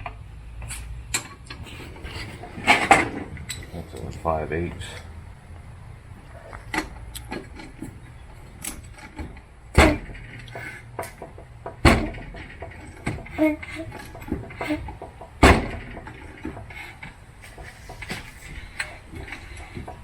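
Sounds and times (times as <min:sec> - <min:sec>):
tools clanking on metal: 0:00.0 - 0:05.1, 0:06.3 - 0:20.0
loud sharp knocks: 0:09.7 - 0:10.3, 0:11.2 - 0:12.4, 0:14.3 - 0:16.2.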